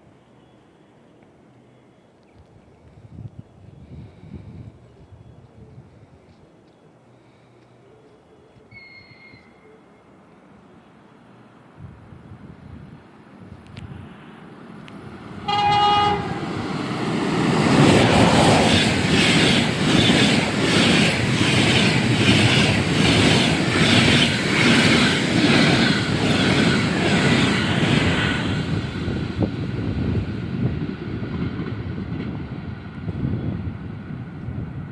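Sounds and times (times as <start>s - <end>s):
train rushing past: 13.9s - 34.9s
locomotive horn blast: 15.4s - 16.5s.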